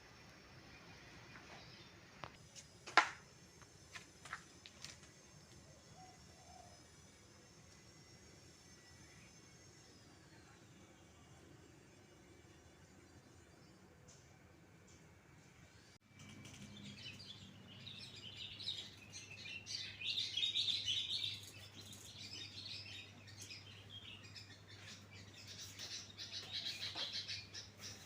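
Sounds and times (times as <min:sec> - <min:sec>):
birds chirping: 0:16.2 - 0:28.0.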